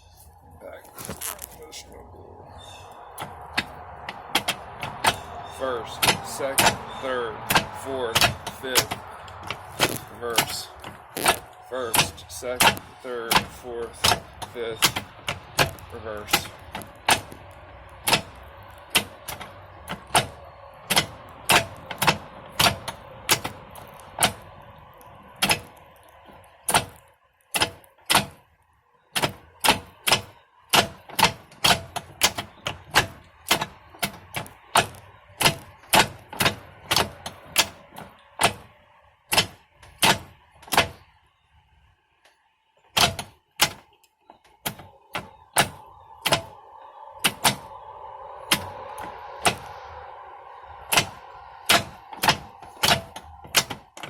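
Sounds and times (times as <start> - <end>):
gear lever clicks and clunks: 3.2 - 17.4, 18.0 - 24.5, 25.4 - 28.4, 29.2 - 38.7, 39.3 - 41.0, 42.9 - 46.6, 47.2 - 47.7, 50.9 - 54.0.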